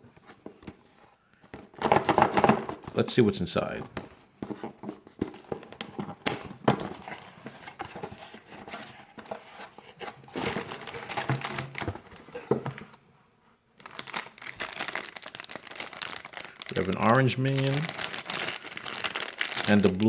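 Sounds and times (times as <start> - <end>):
cardboard rustling: 0.0 - 13.1, 13.8 - 20.0
plastic packaging crinkling: 10.4 - 12.8, 13.8 - 20.0.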